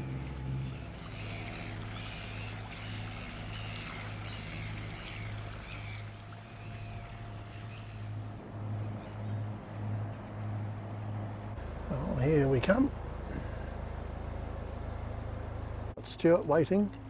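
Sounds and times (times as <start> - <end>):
birds calling: 0.0 - 9.6
boat diesel engines humming: 0.0 - 17.0
water rushing along hulls: 0.0 - 17.0.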